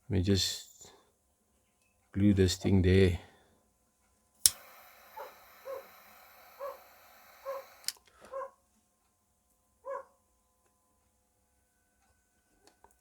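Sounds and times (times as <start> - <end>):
torch lighter clicking: 4.4 - 8.1
torch flame hissing: 4.5 - 8.0
animal yaps: 5.2 - 5.9, 6.6 - 8.5, 9.9 - 10.1.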